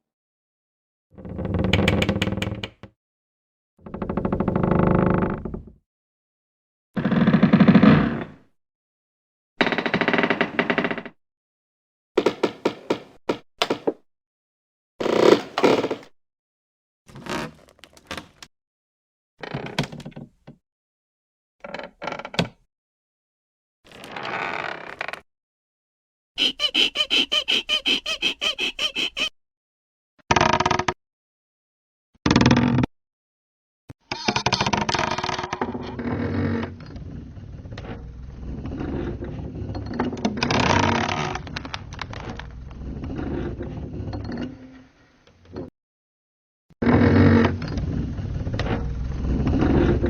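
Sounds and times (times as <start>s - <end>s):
wood creaking and cracking: 17.1s - 18.5s, 23.9s - 25.2s.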